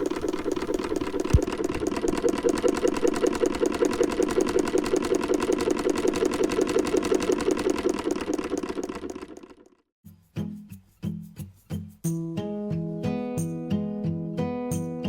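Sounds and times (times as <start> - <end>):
sewing machine stitching: 0.0 - 9.8.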